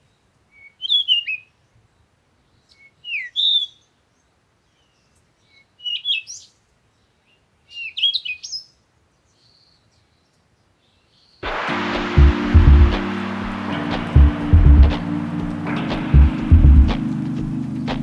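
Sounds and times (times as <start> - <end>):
music: 11.4 - 18.0.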